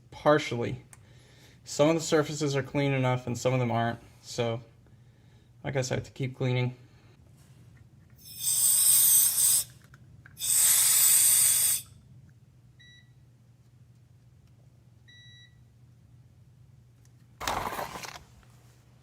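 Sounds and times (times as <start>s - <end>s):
spray can bursts: 8.3s - 9.7s, 10.4s - 11.9s.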